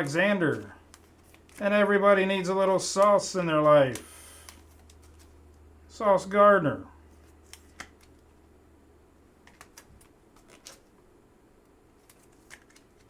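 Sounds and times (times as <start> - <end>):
trading cards clicking: 9.4 - 10.8.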